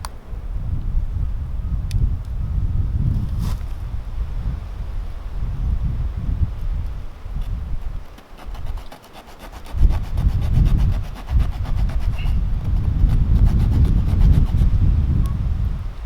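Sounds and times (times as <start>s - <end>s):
wind buffeting microphone: 0.0s - 16.0s.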